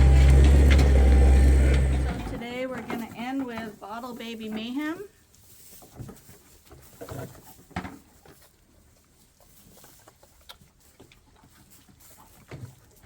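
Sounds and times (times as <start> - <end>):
lambs knocking and rustling: 0.0 - 13.0.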